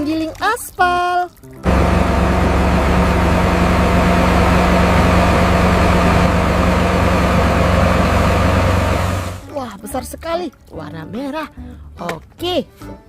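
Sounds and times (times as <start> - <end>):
engine running steadily: 1.7 - 9.4.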